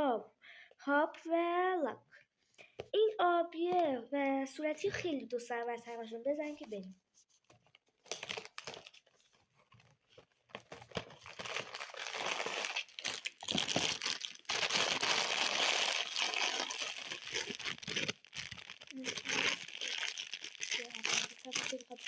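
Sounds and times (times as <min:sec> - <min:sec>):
packaging crinkling and tearing: 0:08.0 - 0:22.0.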